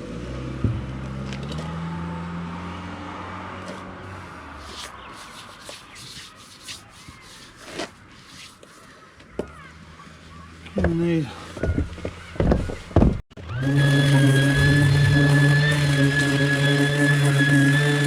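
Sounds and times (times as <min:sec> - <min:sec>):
scraping and rubbing: 0:03.6 - 0:09.0, 0:10.9 - 0:18.0
motor running: 0:13.4 - 0:18.0.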